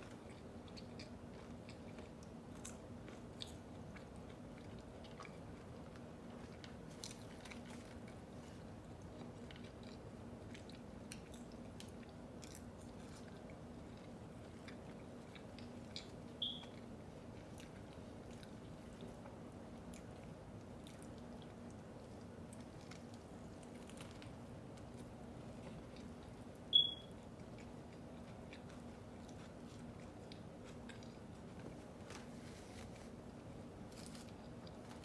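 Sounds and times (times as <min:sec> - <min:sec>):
person chewing food: 0:00.0 - 0:35.0
high-pitched chirp: 0:16.4 - 0:16.7, 0:26.8 - 0:27.1
small crunches: 0:33.8 - 0:35.0.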